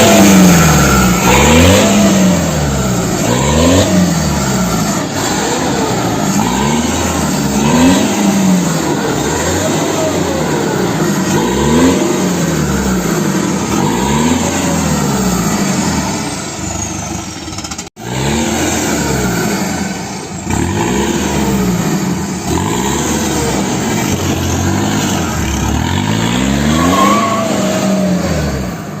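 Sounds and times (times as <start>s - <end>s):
diesel engine revving: 0.0s - 29.0s.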